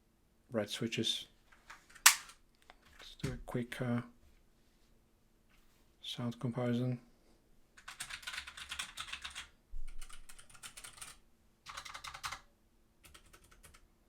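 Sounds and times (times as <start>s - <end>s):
mechanical keyboard typing: 7.8s - 12.4s, 13.0s - 13.8s.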